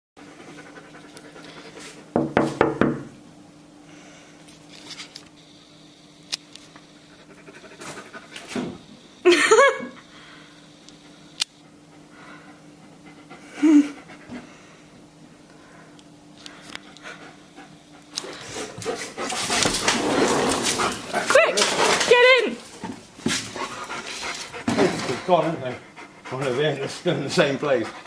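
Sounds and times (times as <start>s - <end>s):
dog panting: 0.2s - 2.1s, 7.0s - 8.6s, 11.1s - 14.7s, 16.8s - 22.0s, 23.3s - 28.0s
steady low hum: 0.2s - 28.0s.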